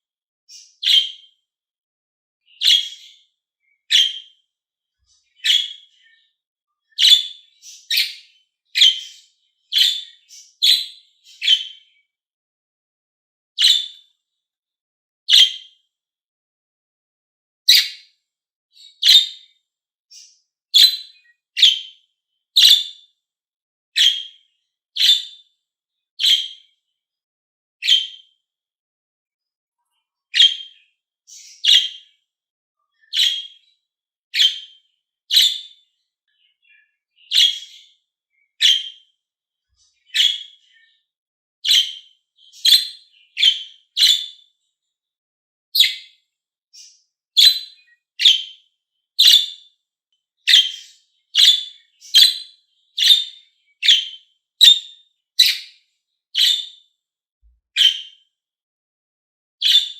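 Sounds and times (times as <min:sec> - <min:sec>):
parrot chirping: 0:00.5 - 0:01.2, 0:02.6 - 0:03.2, 0:03.9 - 0:04.3, 0:05.4 - 0:05.9, 0:07.0 - 0:11.7, 0:13.6 - 0:14.0, 0:15.3 - 0:15.6, 0:17.7 - 0:18.0, 0:19.0 - 0:19.4, 0:20.1 - 0:21.9, 0:22.6 - 0:22.9, 0:24.0 - 0:25.3, 0:26.2 - 0:26.6, 0:27.8 - 0:28.2, 0:30.4 - 0:32.0, 0:33.0 - 0:33.6, 0:34.4 - 0:35.8, 0:37.3 - 0:37.9, 0:38.6 - 0:39.1, 0:40.1 - 0:40.6, 0:41.6 - 0:44.4, 0:45.8 - 0:46.1, 0:46.8 - 0:48.5, 0:49.2 - 0:49.6, 0:50.5 - 0:55.7, 0:56.4 - 0:56.8, 0:57.8 - 0:58.1, 0:59.6 - 0:59.9.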